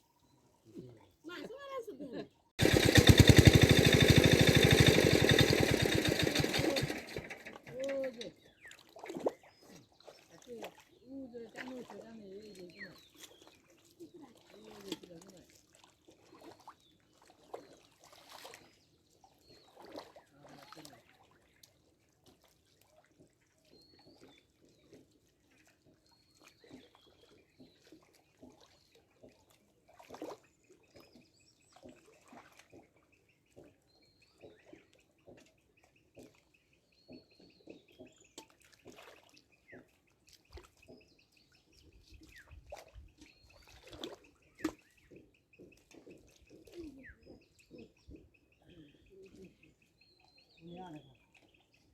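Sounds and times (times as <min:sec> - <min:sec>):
birds chirping: 0:00.0 - 0:08.8, 0:39.6 - 0:51.9
pond water splashing and trickling: 0:02.6 - 0:51.9.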